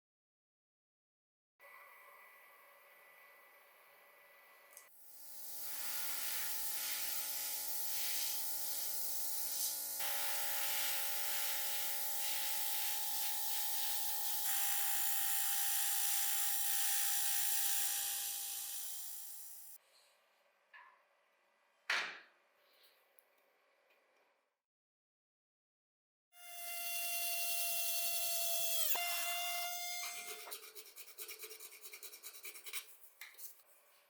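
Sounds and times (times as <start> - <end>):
electric power tool running: 5.1 - 19.8, 26.4 - 30.3.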